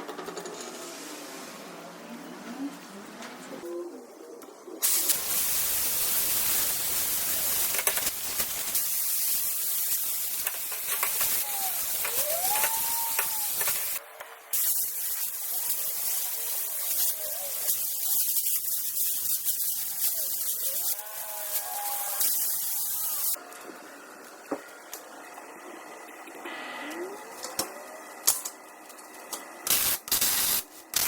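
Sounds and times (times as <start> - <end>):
loud steady hiss: 4.8 - 23.4, 29.6 - 31.0.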